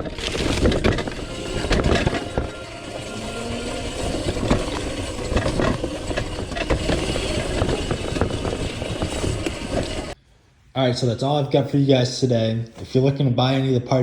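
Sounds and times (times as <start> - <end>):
bike chain and frame rattling: 0.0 - 10.2
tyres rumbling over rough ground: 0.0 - 10.2.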